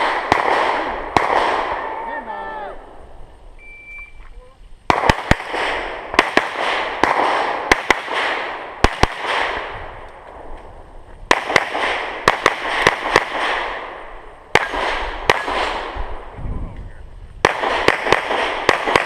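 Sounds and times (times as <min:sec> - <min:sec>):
rapid pistol gunshots with echo: 0:00.0 - 0:02.1, 0:04.9 - 0:10.0, 0:11.3 - 0:16.3, 0:17.4 - 0:19.0.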